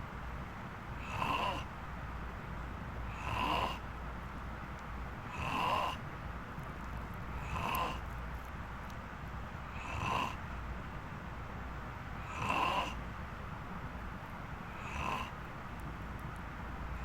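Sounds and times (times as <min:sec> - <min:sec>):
person snoring: 0:01.0 - 0:01.7, 0:03.1 - 0:03.8, 0:05.3 - 0:06.0, 0:07.4 - 0:08.0, 0:09.7 - 0:10.4, 0:12.2 - 0:13.0, 0:14.7 - 0:15.4.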